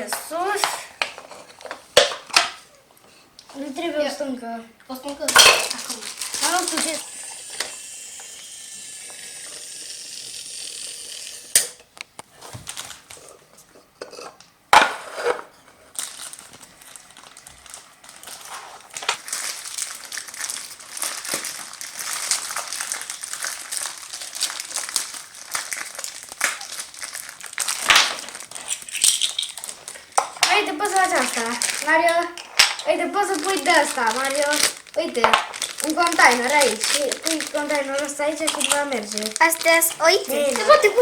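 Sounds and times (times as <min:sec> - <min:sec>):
packaging crinkling and rustling: 0:05.1 - 0:08.5, 0:12.1 - 0:13.7, 0:15.0 - 0:41.0.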